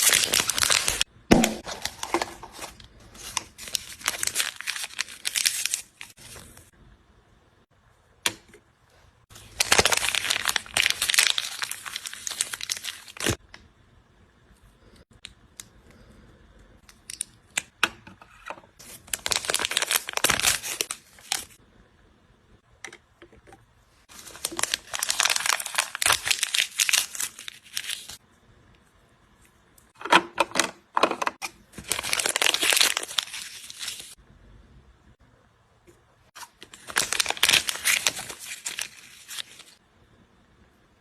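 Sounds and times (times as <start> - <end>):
plastic packaging crinkling: 0.0 - 6.7, 9.3 - 13.4, 18.8 - 21.6, 24.1 - 28.2, 31.7 - 34.2, 36.4 - 39.8.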